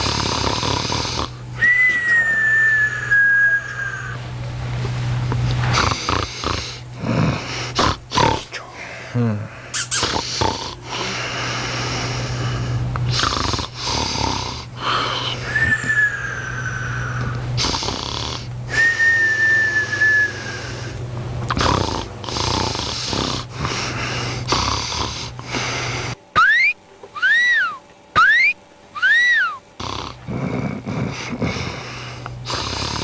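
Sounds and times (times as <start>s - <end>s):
cat snoring: 0.0s - 1.4s, 5.7s - 8.7s, 10.0s - 15.8s, 16.5s - 19.0s, 19.8s - 26.2s, 29.8s - 33.0s
high whistles: 1.6s - 4.2s, 15.5s - 17.3s, 18.7s - 20.8s, 26.4s - 29.6s.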